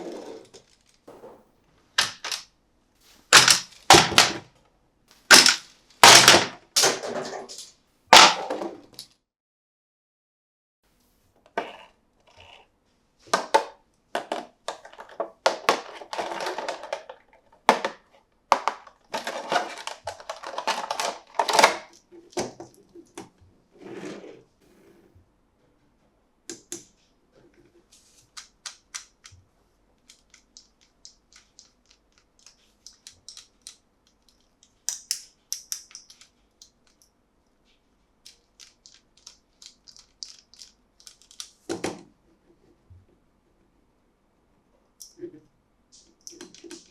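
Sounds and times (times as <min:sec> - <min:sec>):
plastic toy parts clicking: 0:03.4 - 0:04.3, 0:05.3 - 0:06.5, 0:28.2 - 0:29.4, 0:30.0 - 0:37.1, 0:38.2 - 0:41.7, 0:46.0 - 0:46.9.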